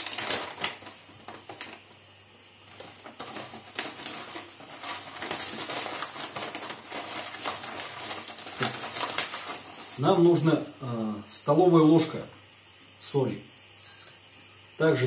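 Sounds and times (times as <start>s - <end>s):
small clicks and crackles: 0.0s - 1.8s, 2.7s - 10.0s.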